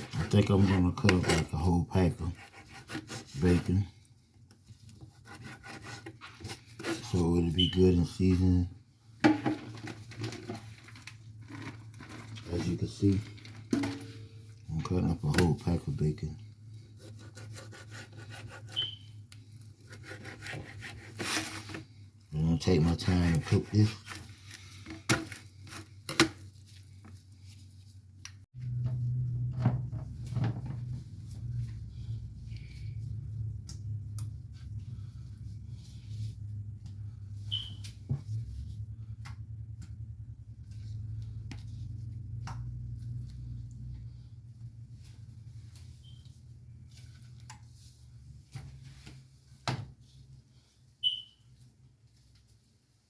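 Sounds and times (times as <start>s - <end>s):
kitchen knocks and clatters: 9.2s - 11.0s, 13.4s - 14.4s.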